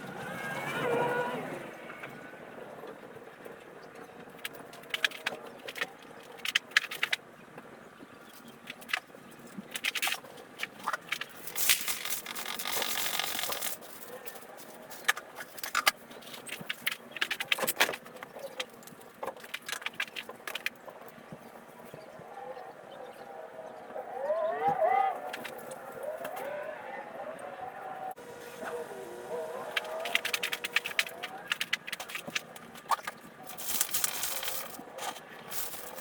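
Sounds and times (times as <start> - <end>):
small hard objects clattering: 9.7 - 20.8, 29.7 - 36.0.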